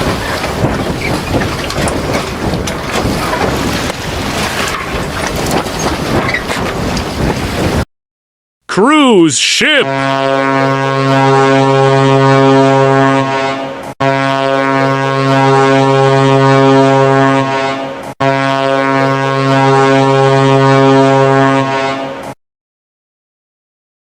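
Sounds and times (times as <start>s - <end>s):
ship horn blasts: 9.8s - 22.4s.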